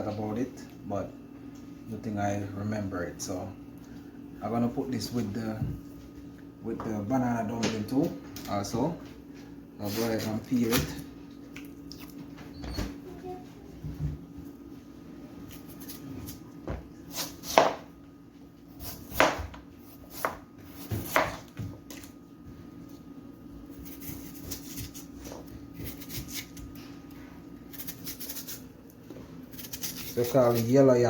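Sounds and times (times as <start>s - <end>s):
knife scraping yam: 23.7s - 26.6s, 27.7s - 28.7s, 29.5s - 30.9s.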